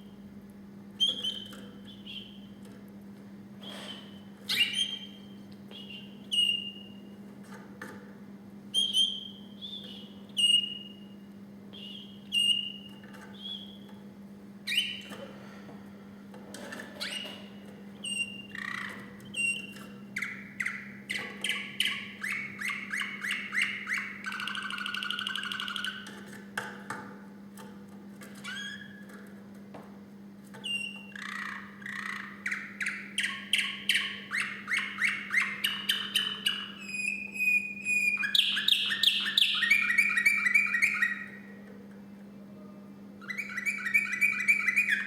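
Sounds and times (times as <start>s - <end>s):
canary singing: 1.0s - 2.6s, 3.6s - 7.2s, 8.7s - 14.0s, 14.6s - 15.2s, 16.7s - 26.4s, 28.4s - 29.2s, 30.6s - 41.6s, 43.2s - 45.0s.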